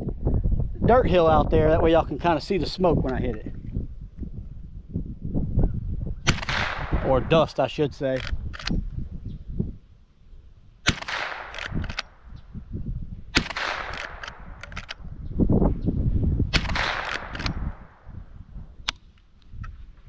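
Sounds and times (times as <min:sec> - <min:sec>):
rifle shots: 0:06.3 - 0:07.5, 0:10.8 - 0:12.2, 0:13.3 - 0:15.0, 0:16.5 - 0:18.1
rifle lever clicks: 0:08.2 - 0:08.8, 0:10.9 - 0:12.1, 0:13.4 - 0:15.0, 0:16.6 - 0:17.6.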